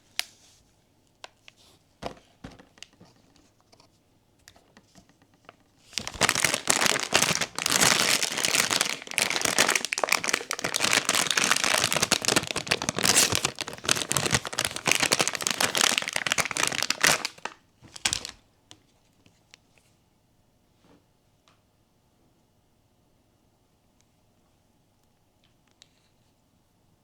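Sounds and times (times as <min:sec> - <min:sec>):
packaging wrapper crinkling: 0:05.8 - 0:18.4.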